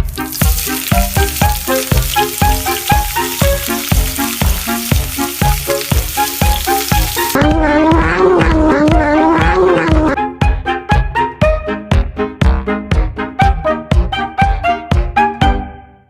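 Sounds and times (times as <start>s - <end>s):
food sizzling in frying pan: 0.0s - 7.4s
background music with steady beat: 0.0s - 16.0s.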